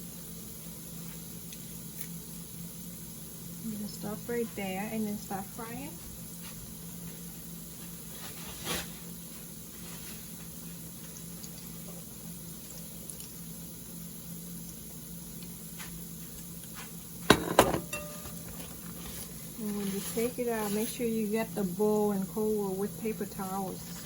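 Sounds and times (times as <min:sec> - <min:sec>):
steady low hum: 0:00.0 - 0:24.0
metal utensils knocking cookware: 0:17.3 - 0:18.5.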